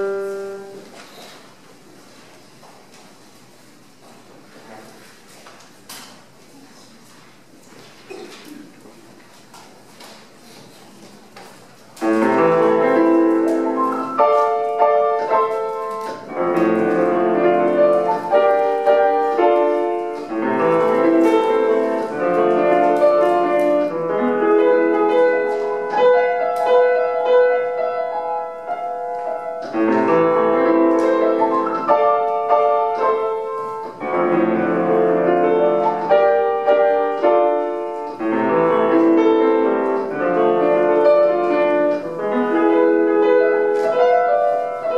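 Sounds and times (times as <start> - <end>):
solo piano classical piece: 0.0 - 1.3, 12.0 - 44.9.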